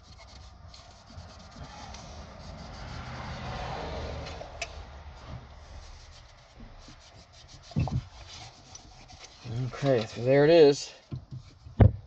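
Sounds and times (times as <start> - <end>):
rag rubbing metal ashtray: 0.0 - 3.4, 5.7 - 10.4.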